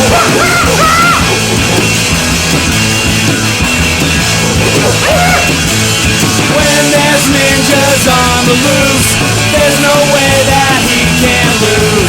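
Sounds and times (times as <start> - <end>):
distorted guitar: 0.0 - 12.0
drum kit: 0.0 - 12.0
person singing: 6.4 - 12.0.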